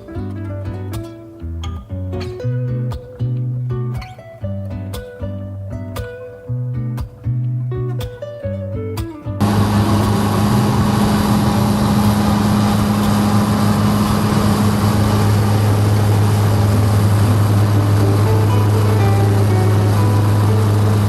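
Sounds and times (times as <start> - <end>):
vehicle engine drone: 9.4 - 21.0.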